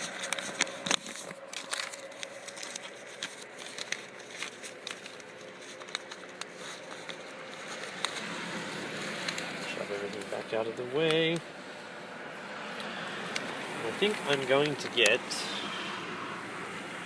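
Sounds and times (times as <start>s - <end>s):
crinkling: 0.0s - 11.4s, 13.3s - 15.3s.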